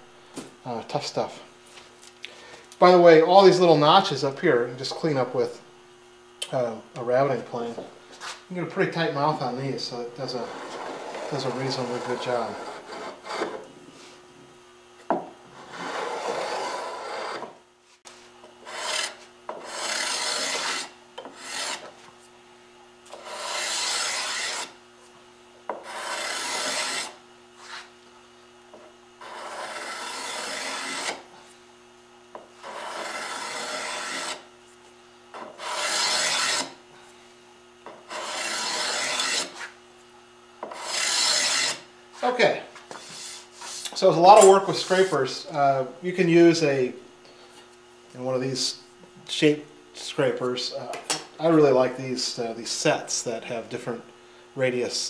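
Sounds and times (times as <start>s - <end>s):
hand scraper scraping wood: 10.3s - 14.1s, 15.5s - 17.6s, 18.6s - 22.0s, 23.1s - 24.8s, 25.7s - 27.9s, 29.2s - 31.3s, 32.6s - 34.5s, 35.4s - 36.8s, 38.1s - 39.8s, 40.6s - 41.9s, 42.9s - 45.2s.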